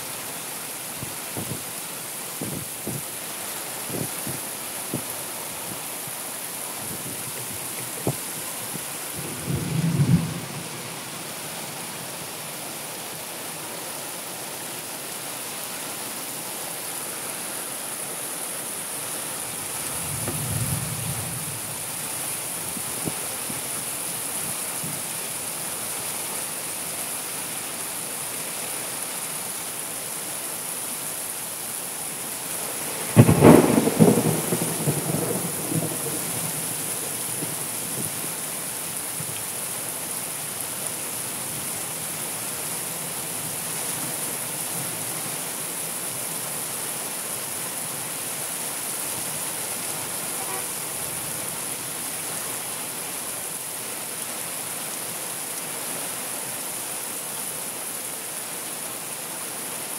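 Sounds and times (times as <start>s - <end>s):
steady rain: 0.0s - 59.9s
thunder rumble: 9.1s - 10.8s, 19.8s - 21.8s, 33.1s - 36.6s
loud thunderclap: 33.2s - 36.0s.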